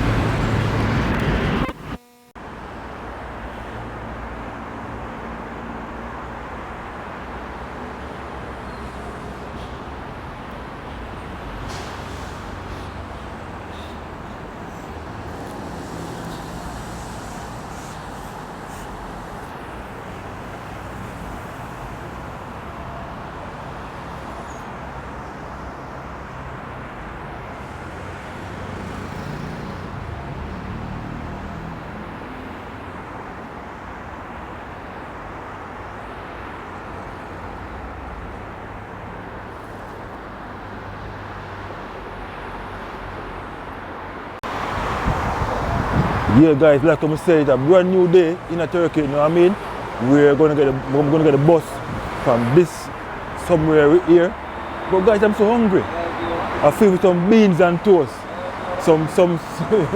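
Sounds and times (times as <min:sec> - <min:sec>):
heavy vehicle rumbling by: 0:00.0 - 0:02.0, 0:07.9 - 0:33.2, 0:44.4 - 0:59.9
road traffic passing: 0:00.0 - 0:59.9.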